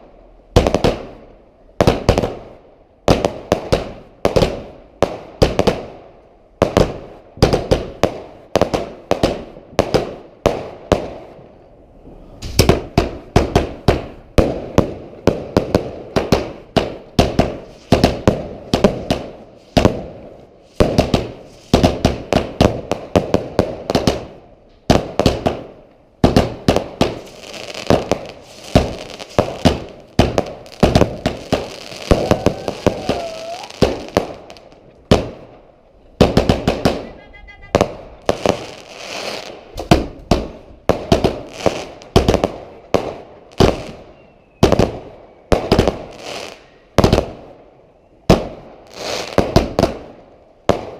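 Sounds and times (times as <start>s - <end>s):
fireworks bangs: 0.5s - 1.2s, 1.8s - 47.5s, 48.3s - 50.9s
fireworks crackle: 6.6s - 47.5s, 48.3s - 50.9s.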